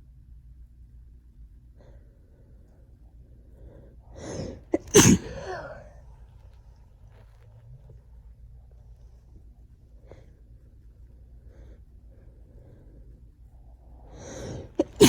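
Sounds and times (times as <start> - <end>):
woman sneezing: 4.2 - 6.0, 14.3 - 15.0
woman gasping in-breath: 14.1 - 15.0.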